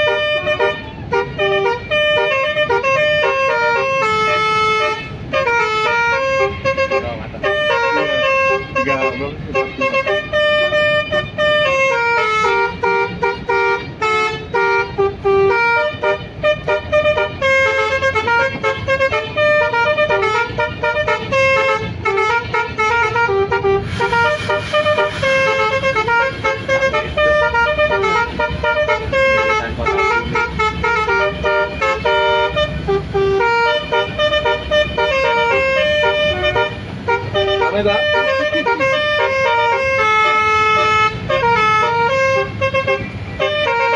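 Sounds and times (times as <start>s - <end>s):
bus air horn melody: 0.0s - 43.9s
low rumble: 23.8s - 37.2s.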